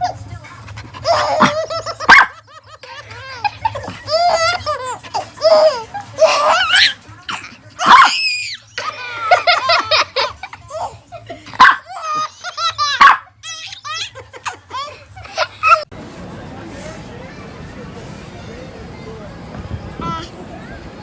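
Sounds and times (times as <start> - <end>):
baby laughing: 0.0 - 15.9.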